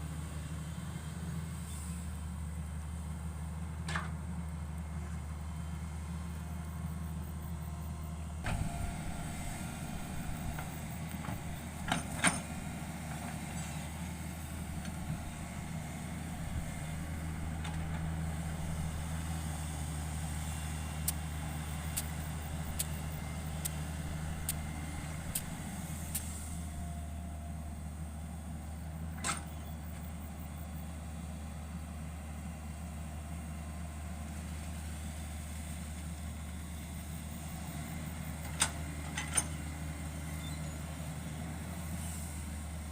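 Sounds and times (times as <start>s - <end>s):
excavator diesel engine running: 0.0s - 42.9s
light ticks: 21.0s - 21.2s, 21.9s - 23.0s, 23.6s - 23.8s, 24.4s - 24.6s, 25.3s - 25.5s.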